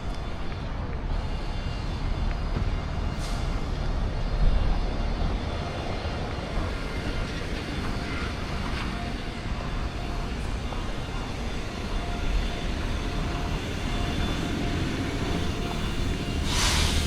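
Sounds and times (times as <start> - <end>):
rush of hiss: 16.4 - 17.0.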